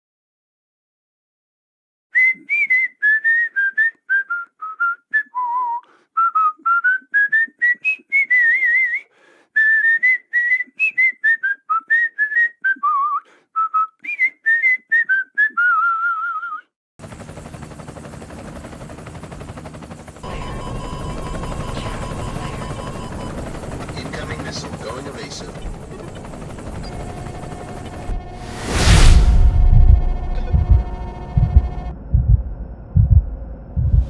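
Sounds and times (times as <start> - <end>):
person whistling a tune: 2.1 - 16.7
steady rushing noise: 25.6 - 31.9.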